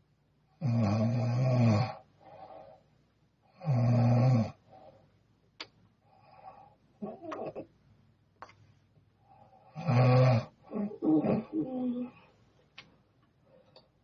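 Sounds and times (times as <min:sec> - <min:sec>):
woman snoring: 0:00.6 - 0:02.0, 0:09.7 - 0:12.2
soft breathing: 0:02.2 - 0:03.0.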